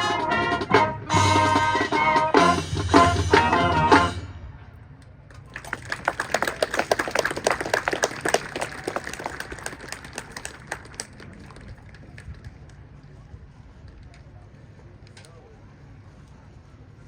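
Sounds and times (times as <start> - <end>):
crowd clapping: 5.3 - 12.8.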